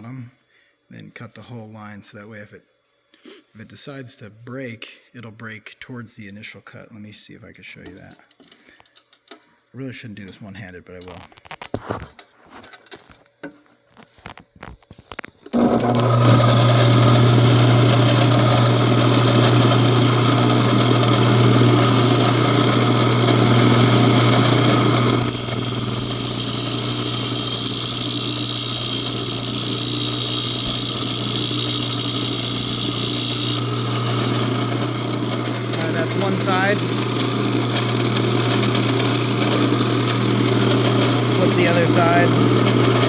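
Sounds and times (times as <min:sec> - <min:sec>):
wet tile saw cutting glass: 0:15.8 - 0:43.0.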